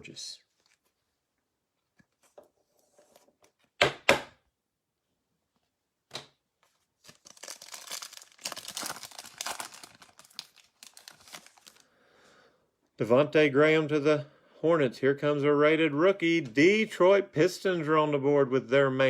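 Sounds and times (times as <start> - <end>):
wrapper crinkling: 6.9 - 11.9
card pack wrapper tearing: 7.0 - 11.8.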